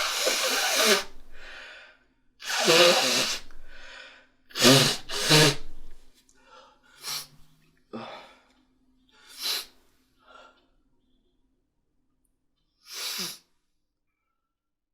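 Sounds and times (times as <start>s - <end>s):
person sneezing: 0.0s - 1.2s, 2.4s - 3.7s, 4.5s - 5.9s.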